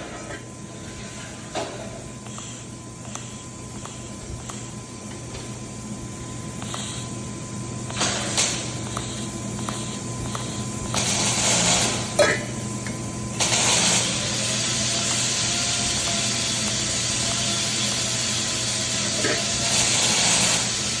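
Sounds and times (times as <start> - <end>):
low electrical hum: 0.0 - 21.0
welding arc hissing: 0.0 - 21.0.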